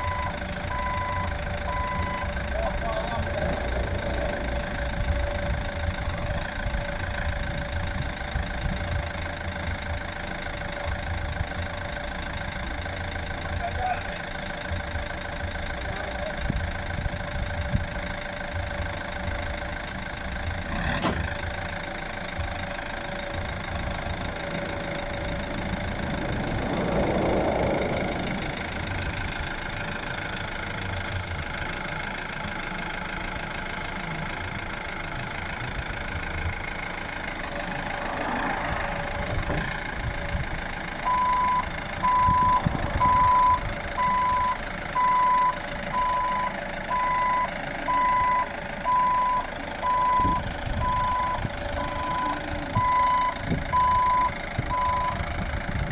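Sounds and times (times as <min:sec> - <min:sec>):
reversing alarm beeping: 0:00.0 - 0:07.1, 0:41.0 - 0:55.3
vehicle engine idling: 0:00.0 - 0:55.9.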